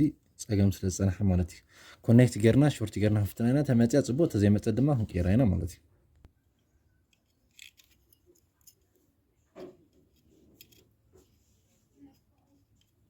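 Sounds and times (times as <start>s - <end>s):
small tools clicking and tapping: 6.6s - 9.1s, 9.8s - 10.9s.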